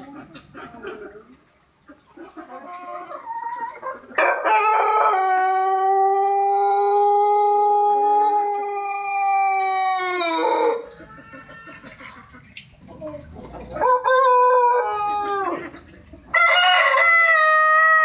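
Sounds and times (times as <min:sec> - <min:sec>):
rooster crowing: 0:04.2 - 0:11.7, 0:13.8 - 0:15.6, 0:16.3 - 0:18.0.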